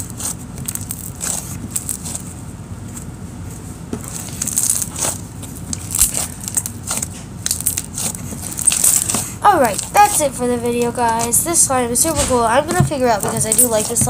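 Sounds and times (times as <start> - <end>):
slime squished by hand: 4.0 - 10.1.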